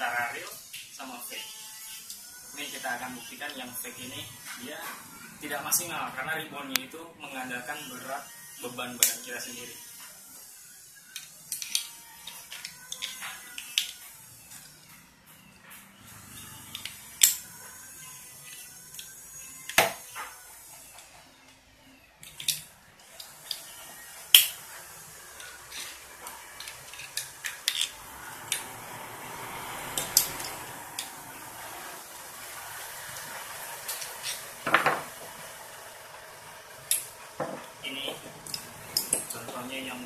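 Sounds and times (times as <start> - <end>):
metal parts clinking and knocking: 26.6 - 28.0.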